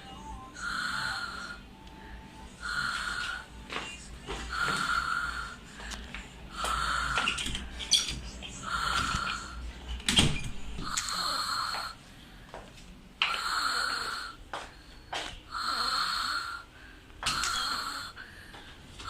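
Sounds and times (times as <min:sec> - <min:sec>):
person snoring with rasping whistle: 0:00.6 - 0:01.6, 0:15.6 - 0:16.7.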